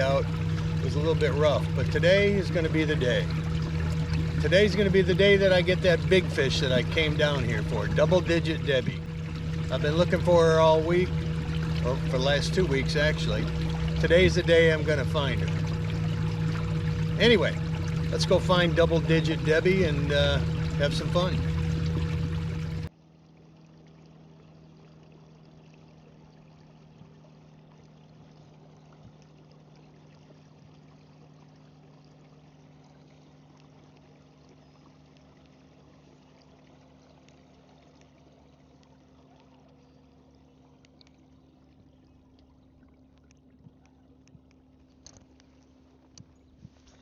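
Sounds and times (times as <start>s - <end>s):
steady low hum: 0.0s - 22.9s
water trickling along kayak: 0.0s - 47.0s.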